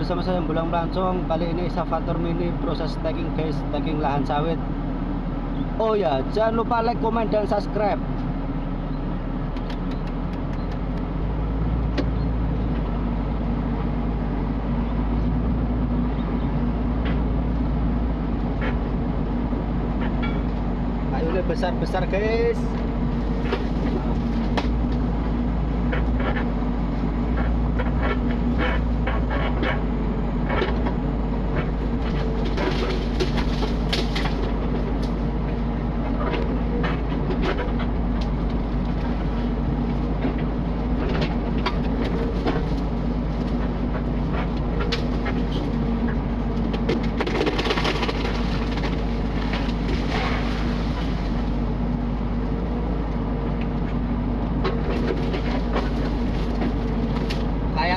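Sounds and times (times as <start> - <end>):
excavator diesel engine running: 0.0 - 57.9
knocks and cracks of wood: 32.0 - 35.2, 46.6 - 51.3, 54.6 - 57.5.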